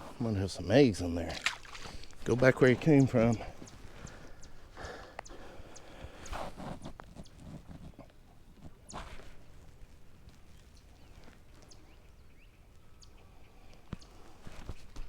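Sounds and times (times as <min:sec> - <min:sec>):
water rushing: 0:00.4 - 0:03.4.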